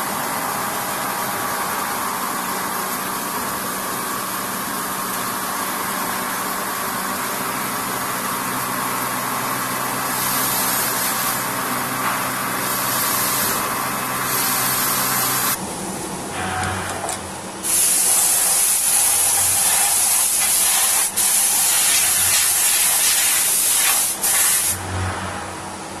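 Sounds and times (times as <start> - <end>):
milling machine hiss: 9.6 - 15.6, 17.6 - 25.0
machine low hum: 11.4 - 17.6, 24.8 - 26.0.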